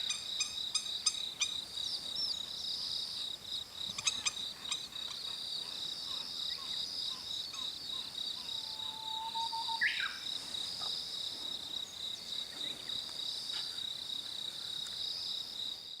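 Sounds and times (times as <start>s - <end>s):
insects buzzing: 0.0s - 16.0s
bird whistle: 8.7s - 10.2s.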